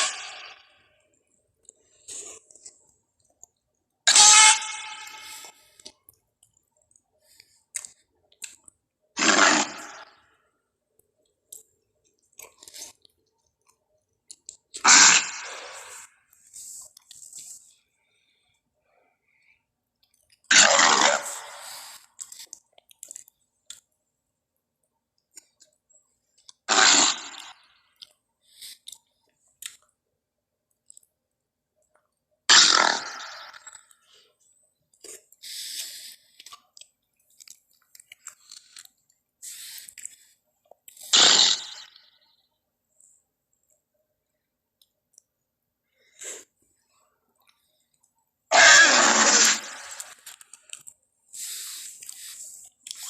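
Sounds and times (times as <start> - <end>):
loud creature call: 4.1 - 5.4, 14.8 - 16.0, 20.5 - 21.7, 48.5 - 50.1
small clicks and snorts: 20.0 - 24.0, 34.9 - 41.8, 49.2 - 53.0
creature rough breathy call: 48.5 - 50.1.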